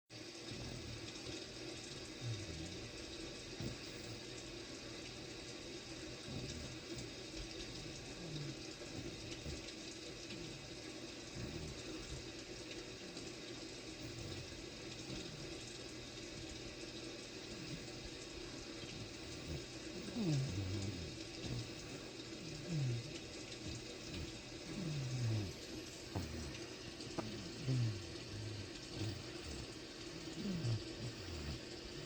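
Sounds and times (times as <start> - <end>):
steady hiss: 0.2 - 32.0
baby snoring softly: 2.1 - 4.3, 19.0 - 32.0.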